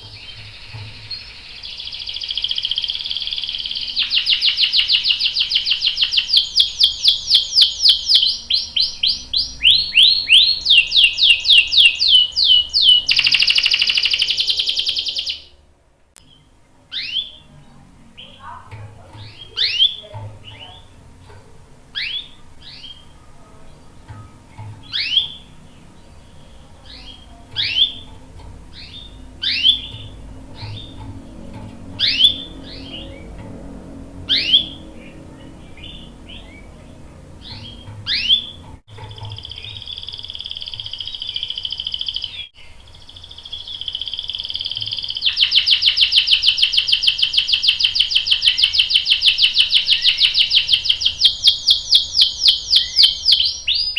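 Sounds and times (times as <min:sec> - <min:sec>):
canary chirping: 0:00.0 - 0:15.6, 0:16.2 - 0:53.9
canary trilling song: 0:00.0 - 0:53.9.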